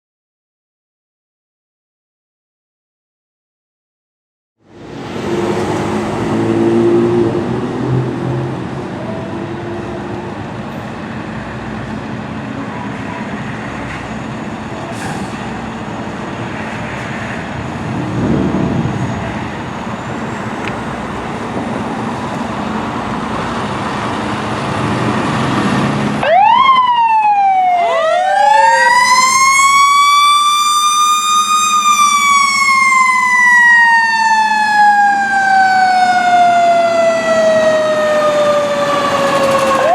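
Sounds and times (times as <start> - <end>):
fire truck engine: 4.6 - 39.9
traffic noise: 4.6 - 39.9
fire truck siren wailing: 4.7 - 39.9.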